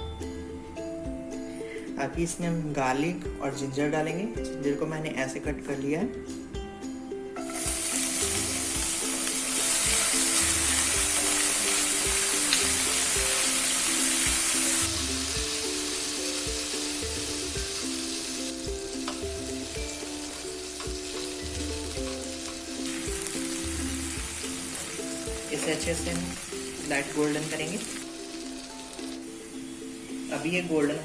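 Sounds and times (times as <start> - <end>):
garlic sizzling in hot oil: 7.4 - 31.0.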